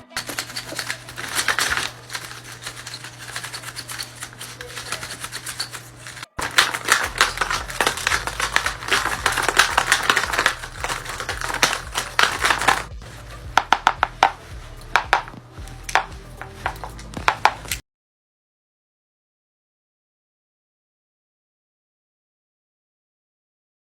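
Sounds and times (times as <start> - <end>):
paper being handled and cut: 0.0 - 17.8.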